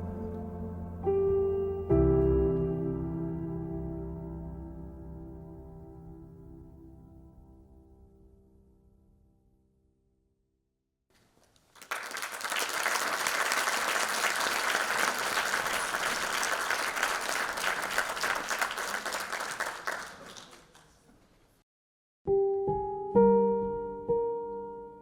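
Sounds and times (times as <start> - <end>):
audience applauding: 11.3 - 21.3.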